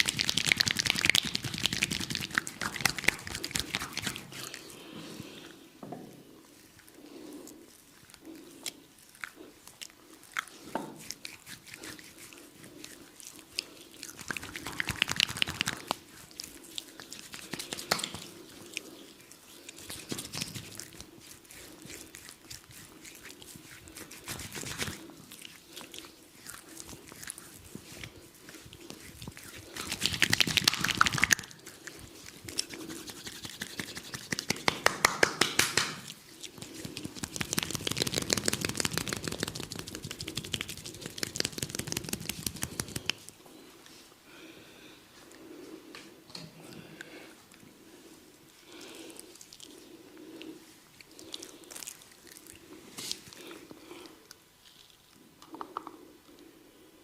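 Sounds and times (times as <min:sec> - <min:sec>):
hands massaging oiled skin: 0:00.0 - 0:05.4, 0:06.5 - 0:44.0.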